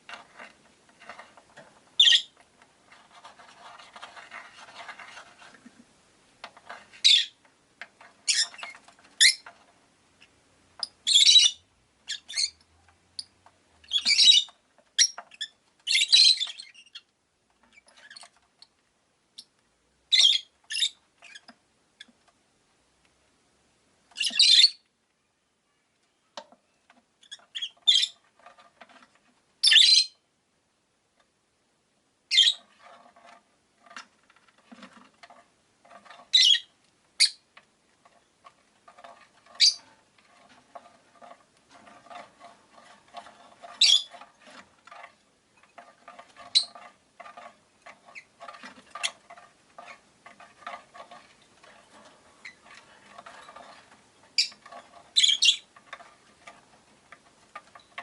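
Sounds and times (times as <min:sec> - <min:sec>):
lovebirds chirping: 0:02.0 - 0:02.4, 0:10.8 - 0:12.6, 0:13.2 - 0:17.1, 0:36.3 - 0:37.4, 0:39.5 - 0:39.8, 0:43.8 - 0:44.2, 0:46.5 - 0:46.8, 0:54.3 - 0:55.7.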